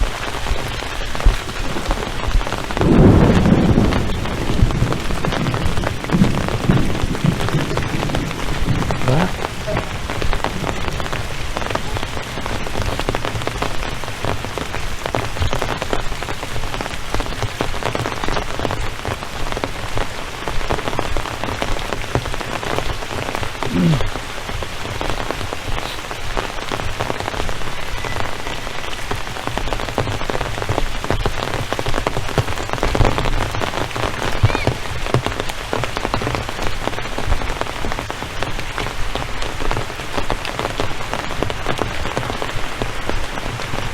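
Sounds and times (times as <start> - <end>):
steady rain: 0.0 - 43.9.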